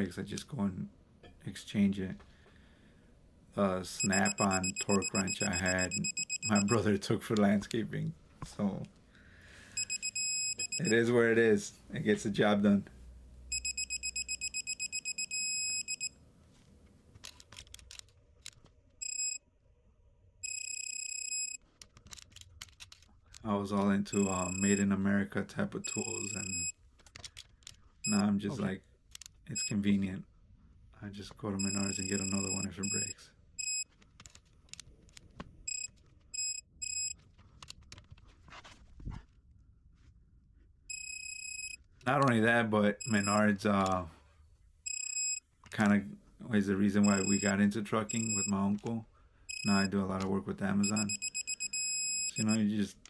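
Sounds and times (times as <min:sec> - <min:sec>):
high electronic beeps: 0:04.0 - 0:06.8, 0:09.8 - 0:11.0, 0:13.5 - 0:16.1, 0:24.1 - 0:24.8, 0:25.8 - 0:26.7, 0:31.6 - 0:33.8, 0:47.0 - 0:47.5, 0:50.8 - 0:52.5.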